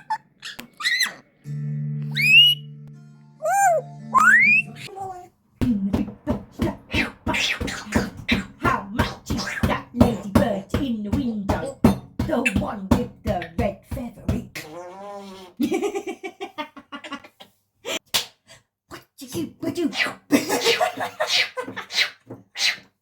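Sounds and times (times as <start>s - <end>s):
parrot wavering call: 2.1s - 2.7s, 3.4s - 4.9s.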